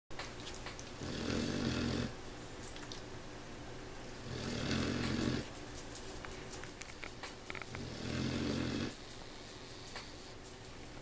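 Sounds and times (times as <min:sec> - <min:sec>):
puppy snoring: 0:01.0 - 0:02.2, 0:04.2 - 0:05.6, 0:07.6 - 0:10.4.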